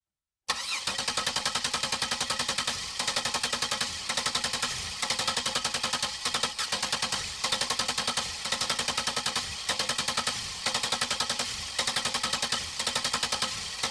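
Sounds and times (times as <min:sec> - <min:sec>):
car starter solenoid clicking: 0:00.5 - 0:01.8.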